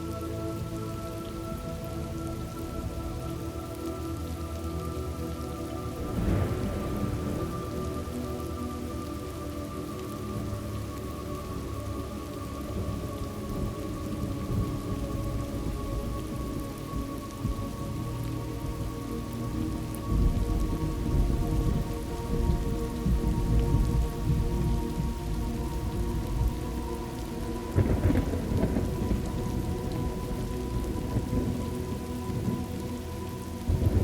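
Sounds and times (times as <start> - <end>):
soft sustained humming tones: 0.0 - 34.0
steady rain: 0.0 - 34.0
rolling thunder rumble: 5.8 - 10.8, 12.7 - 34.0.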